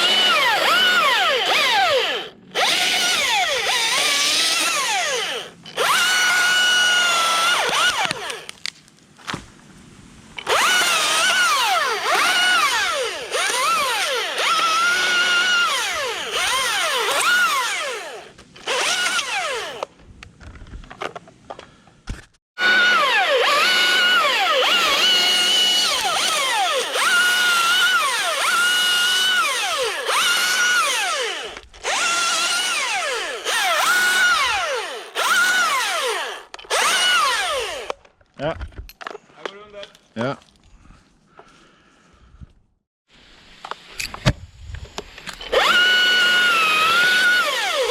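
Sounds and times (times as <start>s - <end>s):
electric chainsaw motor whining: 0.0s - 8.5s, 10.4s - 19.9s, 22.6s - 38.0s, 43.4s - 47.9s.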